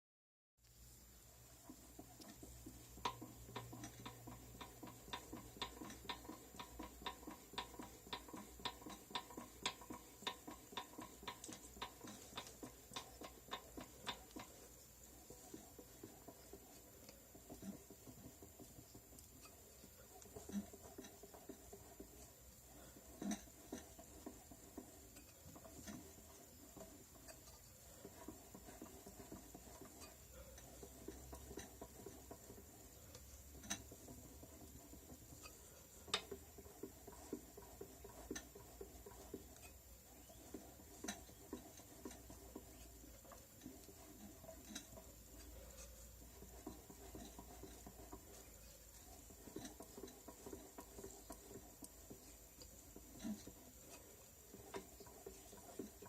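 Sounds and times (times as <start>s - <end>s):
faint irregular knocking: 1.5s - 56.0s.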